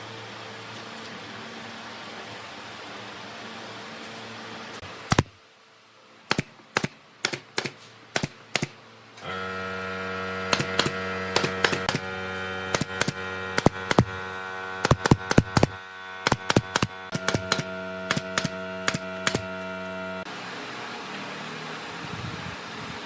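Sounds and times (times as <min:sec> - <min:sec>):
steady hum: 0:04.8 - 0:20.8.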